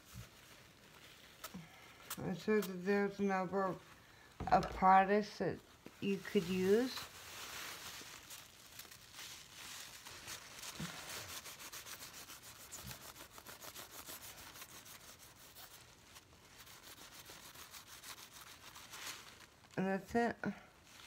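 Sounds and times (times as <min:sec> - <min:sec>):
rapid rubbing strokes: 0:10.2 - 0:15.9, 0:16.5 - 0:19.2.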